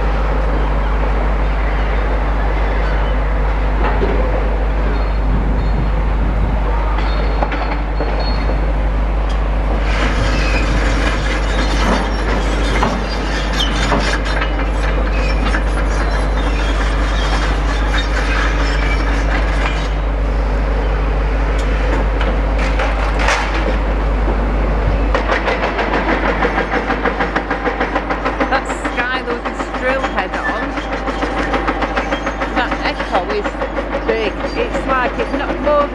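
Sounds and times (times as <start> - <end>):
excavator engine running: 0.0 - 35.9
hydraulic breaker hammering: 25.0 - 35.9.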